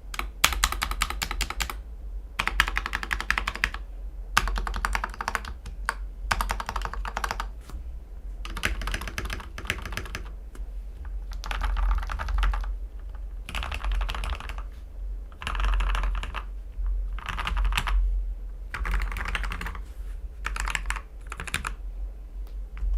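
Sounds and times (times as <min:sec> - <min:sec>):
typing on mechanical keyboard: 0:00.2 - 0:01.8, 0:02.4 - 0:03.8, 0:04.4 - 0:07.5, 0:08.4 - 0:10.3, 0:11.1 - 0:14.7, 0:15.3 - 0:16.5, 0:17.1 - 0:18.0, 0:18.7 - 0:19.8, 0:20.4 - 0:21.8
low hum: 0:01.7 - 0:02.9, 0:07.5 - 0:08.5, 0:10.2 - 0:22.9.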